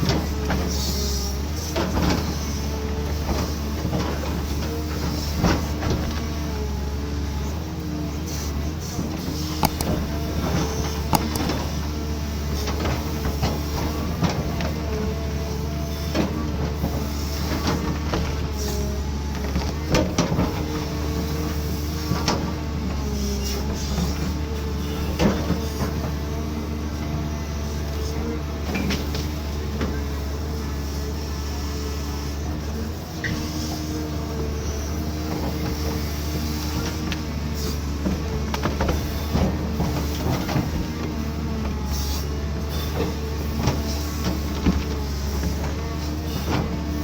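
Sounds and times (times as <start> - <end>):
excavator engine humming: 0.0 - 47.0
hydraulic whine: 5.3 - 15.1.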